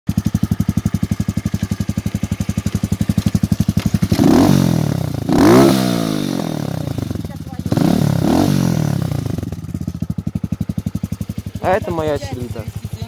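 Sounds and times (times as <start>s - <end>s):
motorcycle engine idling and revving: 0.0s - 13.0s.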